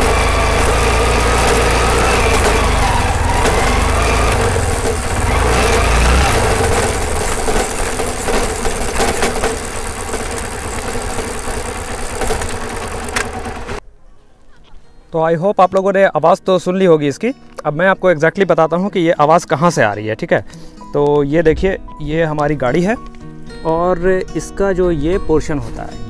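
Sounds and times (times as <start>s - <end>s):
heavy deep rumble: 0.0s - 13.8s
motorcycle engine and chain running: 0.0s - 13.8s.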